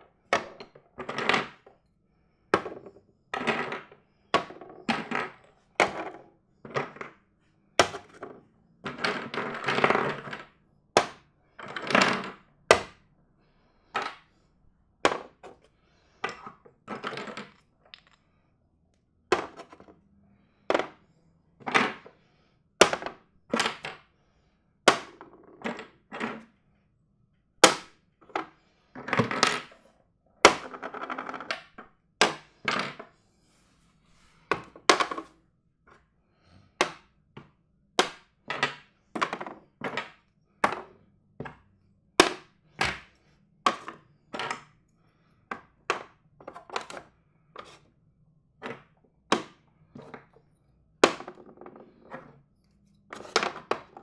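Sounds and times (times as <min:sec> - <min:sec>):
chess pieces clacking on board: 0:02.6 - 0:07.2, 0:16.3 - 0:18.4, 0:51.0 - 0:52.4, 0:53.0 - 0:54.0.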